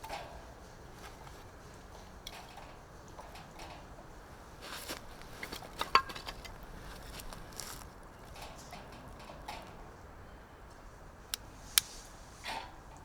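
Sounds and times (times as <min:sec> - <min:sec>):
objects clicking and knocking: 0:05.0 - 0:09.6.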